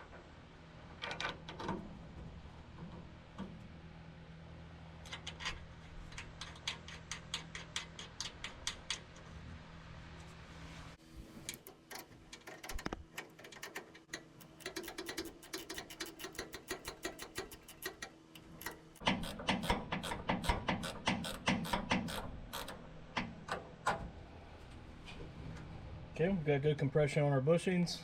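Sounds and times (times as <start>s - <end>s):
hand ratchet clicking: 11.9s - 22.8s.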